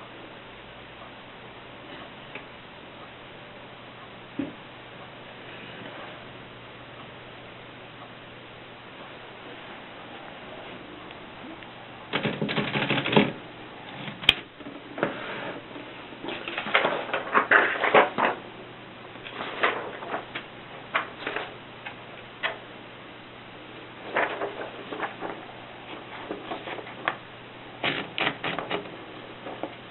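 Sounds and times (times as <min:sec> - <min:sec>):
typewriter key strikes: 0:12.1 - 0:13.4.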